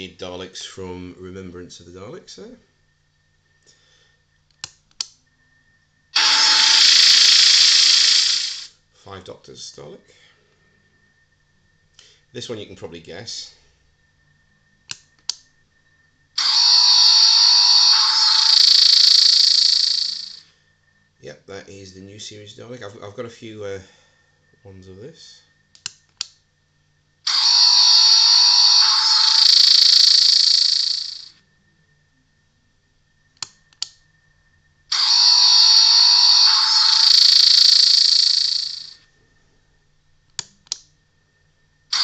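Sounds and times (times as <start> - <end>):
electronic gun blast from speaker: 6.2 - 8.7, 16.4 - 20.4, 27.3 - 31.3, 34.9 - 39.0.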